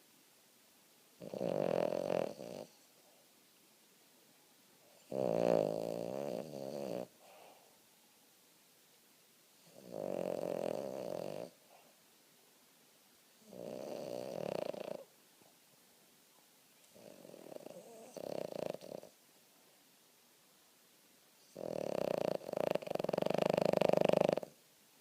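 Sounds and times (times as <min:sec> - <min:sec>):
dog snoring: 0:01.2 - 0:02.9, 0:04.9 - 0:07.6, 0:09.6 - 0:11.8, 0:13.4 - 0:15.1, 0:16.9 - 0:19.2, 0:21.4 - 0:24.6.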